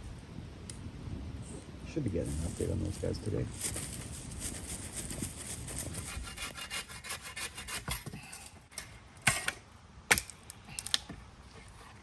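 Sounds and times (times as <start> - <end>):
rasping scraping strokes: 5.2 - 8.9.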